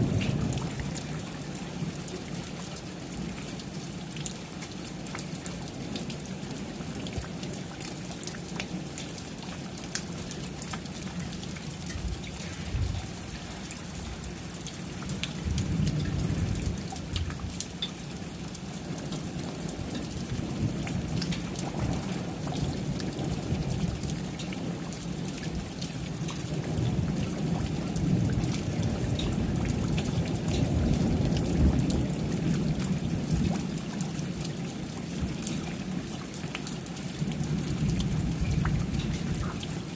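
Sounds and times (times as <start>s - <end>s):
low rolling thunder: 0.0s - 1.8s, 12.0s - 14.3s, 15.0s - 17.6s, 19.7s - 24.8s, 25.6s - 33.8s
steady rain: 0.0s - 39.9s.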